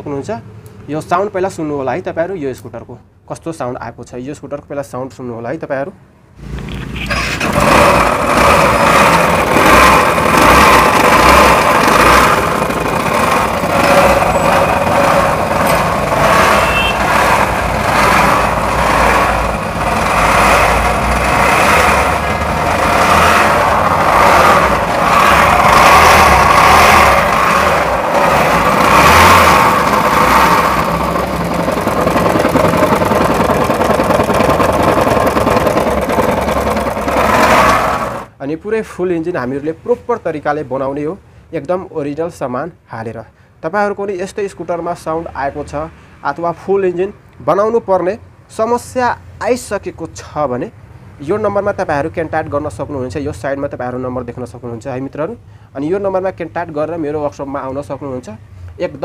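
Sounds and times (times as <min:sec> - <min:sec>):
scooter engine with mechanical noise: 0:06.4 - 0:38.4.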